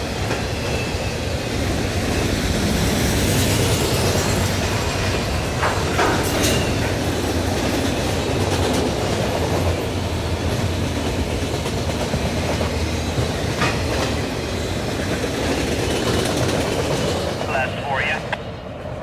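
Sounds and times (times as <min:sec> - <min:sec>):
freight train cars rumbling past: 0:00.0 - 0:19.0
wheels clicking over rail joints: 0:05.5 - 0:14.3.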